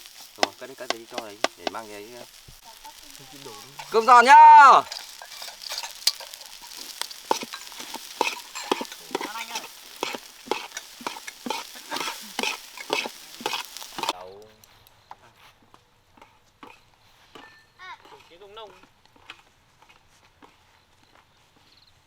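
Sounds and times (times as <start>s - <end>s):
spatula scraping a pan: 0.0s - 4.2s, 4.8s - 14.2s
rice sizzling in a pan: 0.0s - 14.2s.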